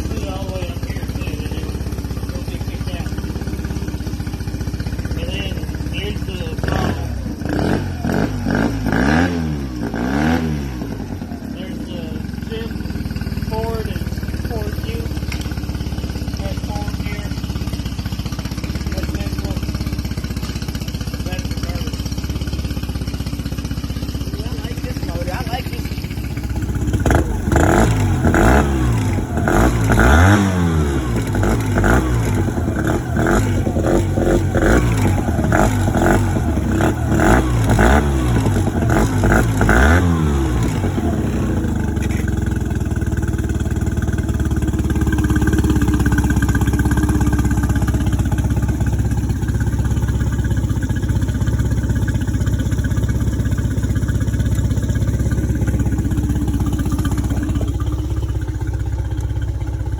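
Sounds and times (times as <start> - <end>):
outboard motor running: 0.0 - 59.9
motor knocking: 12.5 - 59.9.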